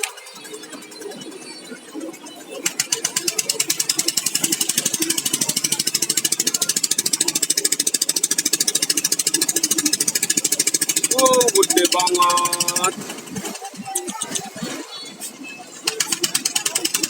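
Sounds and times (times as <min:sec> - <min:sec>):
diesel boat engine knocking: 0:02.8 - 0:13.4.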